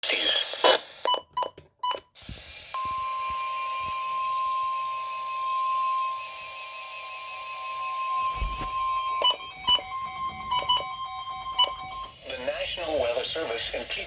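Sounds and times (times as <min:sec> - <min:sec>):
faint on-off beeping: 0:02.8 - 0:12.2
steady alarm tone: 0:02.8 - 0:12.2
short electronic beeps: 0:08.2 - 0:12.1.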